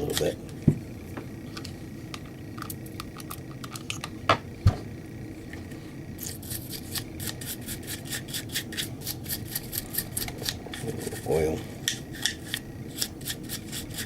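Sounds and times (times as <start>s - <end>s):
brush scrubbing strokes: 10.8s - 11.6s.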